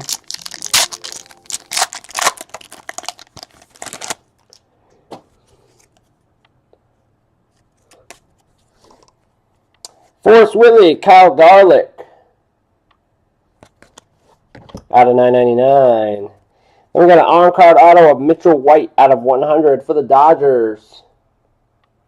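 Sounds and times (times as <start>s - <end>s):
packaging tearing and crinkling: 0.0s - 4.6s.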